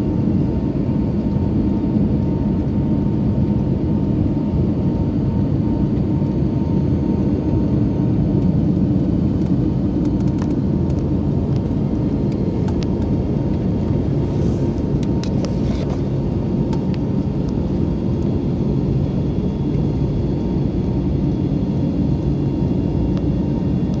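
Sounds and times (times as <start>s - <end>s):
faint steady whine: 0.0s - 24.0s
jet engine and airflow drone: 0.0s - 24.0s.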